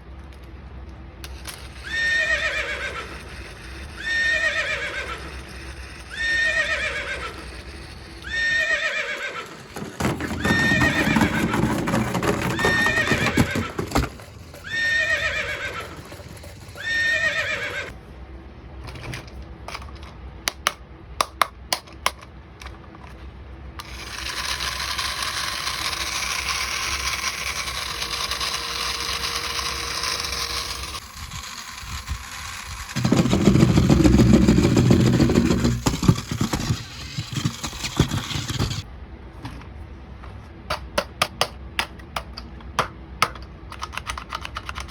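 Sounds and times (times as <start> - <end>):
toy playing horse whinny: 1.4 - 18.0, 23.8 - 38.8
sharp clicks: 40.8 - 44.9.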